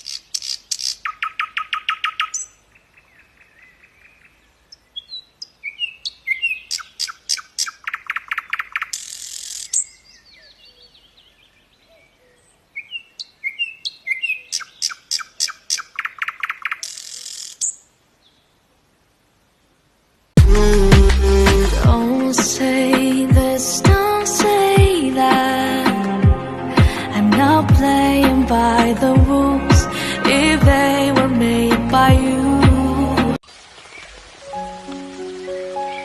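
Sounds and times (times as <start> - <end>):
bird twittering: 0.0 - 17.9
songbird singing: 0.0 - 19.9, 20.5 - 36.0.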